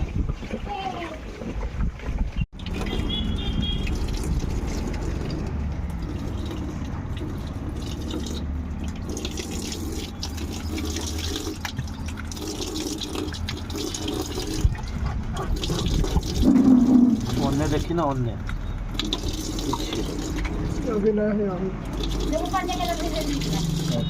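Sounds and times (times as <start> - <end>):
water running and pouring: 2.5 - 21.0, 21.8 - 24.0.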